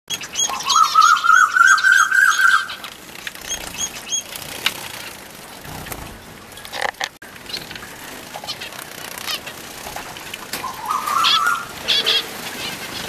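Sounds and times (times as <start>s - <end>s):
finches calling: 0.1s - 4.3s, 10.6s - 13.0s
high chirps: 10.6s - 12.3s.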